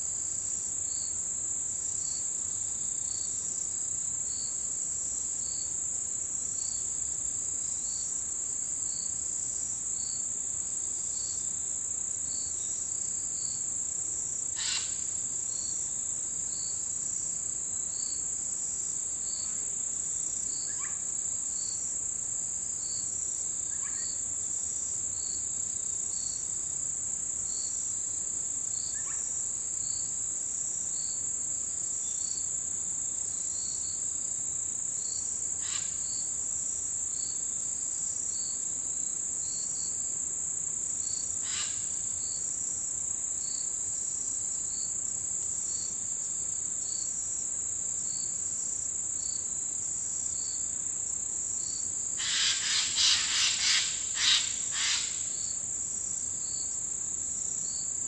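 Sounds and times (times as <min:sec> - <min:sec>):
sharp insect calls: 0:00.0 - 0:58.0
insect chirping rhythmically: 0:14.4 - 0:16.8, 0:20.3 - 0:22.2, 0:27.4 - 0:30.0, 0:34.6 - 0:37.4, 0:40.8 - 0:42.7, 0:46.6 - 0:58.0
insect high trill: 0:14.6 - 0:15.2, 0:41.4 - 0:42.1, 0:51.6 - 0:55.6.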